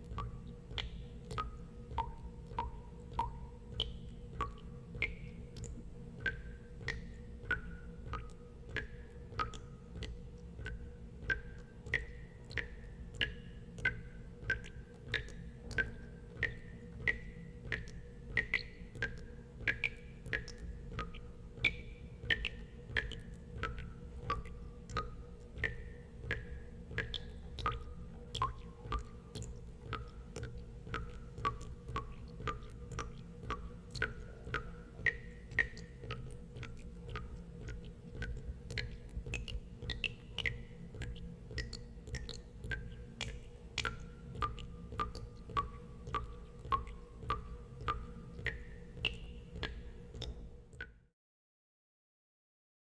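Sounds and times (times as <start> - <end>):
low steady rumble: 0.0 - 50.7
water droplets dripping into water: 0.0 - 51.1.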